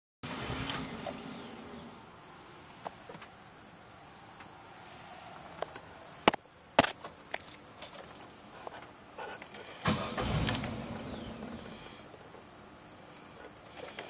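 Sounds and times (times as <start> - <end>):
engine cranking and catching: 9.6 - 12.2.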